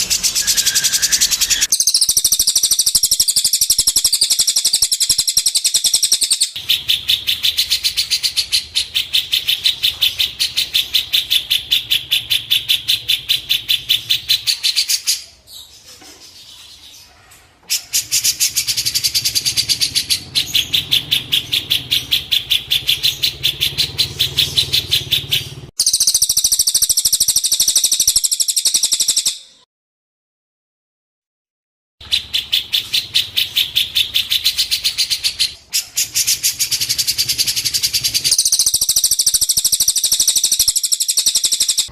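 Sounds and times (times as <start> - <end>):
songbird chirping rapidly: 0.0 - 29.6, 32.0 - 41.9.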